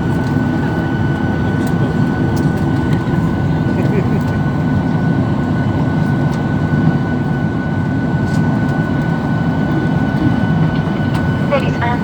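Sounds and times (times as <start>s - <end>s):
aircraft engine and airflow rumble: 0.0s - 12.0s
thin steady whine: 8.9s - 12.0s.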